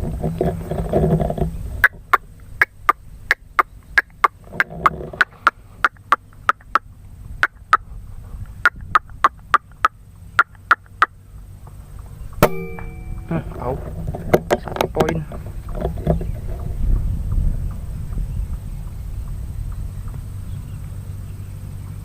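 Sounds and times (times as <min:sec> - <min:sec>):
bird call of sharp clicking notes: 0:01.8 - 0:06.8, 0:09.2 - 0:12.9.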